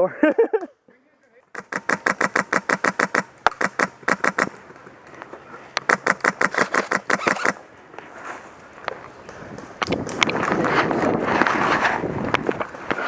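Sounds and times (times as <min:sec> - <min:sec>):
airsoft gun firing rapidly: 0:01.6 - 0:04.5, 0:05.9 - 0:07.6.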